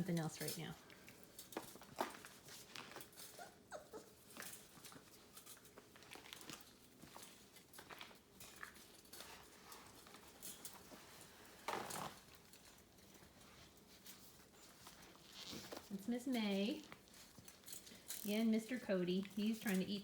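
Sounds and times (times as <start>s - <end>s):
scuffling and scratching: 0.1s - 20.0s
puppies whining: 3.1s - 4.7s.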